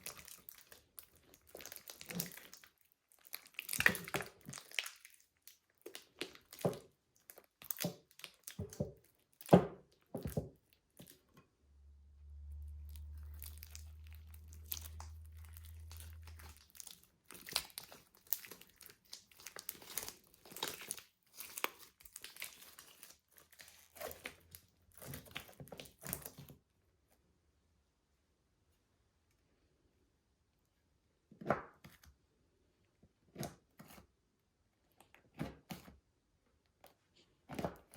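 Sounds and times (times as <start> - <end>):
slime crackling and popping: 0.0 - 10.0, 12.7 - 26.4.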